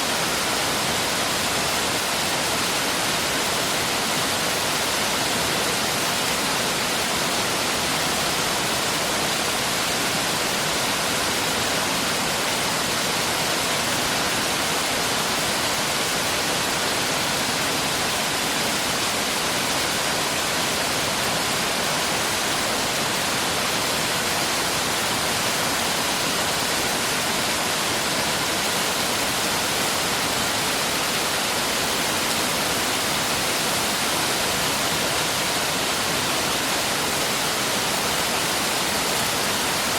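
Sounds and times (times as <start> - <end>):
stream flowing: 0.0 - 39.9.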